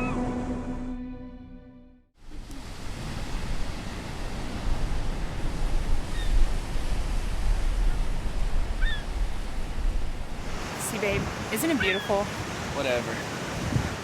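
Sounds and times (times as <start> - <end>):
wind on microphone: 2.2 - 12.3, 13.4 - 14.0
ocean surf breaking: 2.2 - 14.0.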